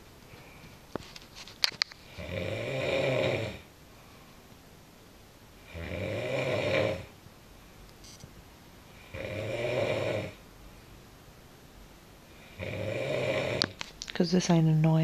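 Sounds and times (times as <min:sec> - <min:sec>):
woman snoring: 0:02.1 - 0:03.7, 0:05.6 - 0:07.2, 0:09.0 - 0:10.4, 0:12.4 - 0:13.8.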